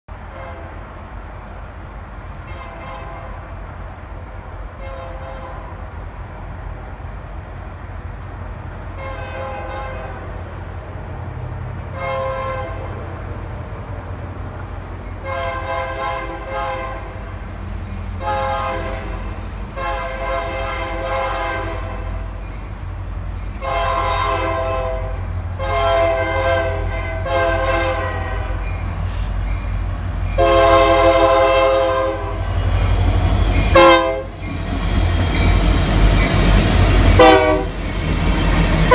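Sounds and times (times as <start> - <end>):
train rumbling: 0.1 - 38.9
locomotive air horn blasts: 2.4 - 3.4, 4.8 - 5.7, 9.0 - 10.3, 11.9 - 13.0, 15.2 - 17.2, 18.2 - 22.1, 23.6 - 29.4, 30.4 - 32.7, 33.7 - 34.4, 37.1 - 37.8.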